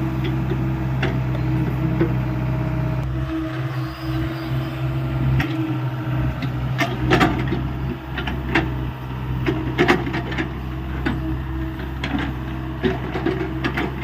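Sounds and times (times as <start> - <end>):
excavator diesel engine running: 0.0 - 14.0
knocks and clatters of digging: 9.4 - 14.0.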